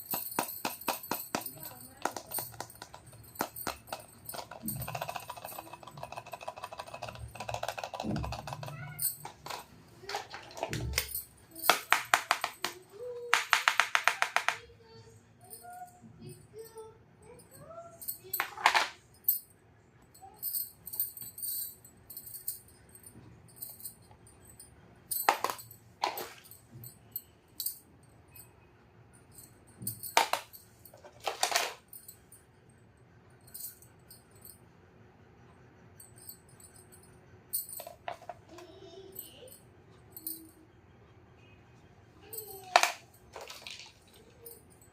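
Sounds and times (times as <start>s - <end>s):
plastic toy pieces clicking: 0.0s - 14.6s, 30.1s - 31.9s, 42.4s - 44.6s.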